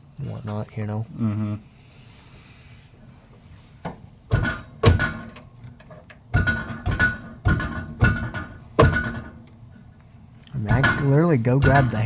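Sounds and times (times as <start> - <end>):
hand banging on metal exhaust: 3.9 - 9.6, 10.6 - 12.0.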